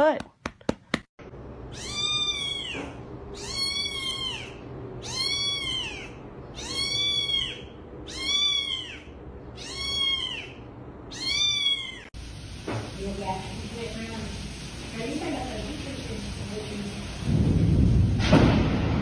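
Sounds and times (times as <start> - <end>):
cat meowing: 1.7 - 12.1.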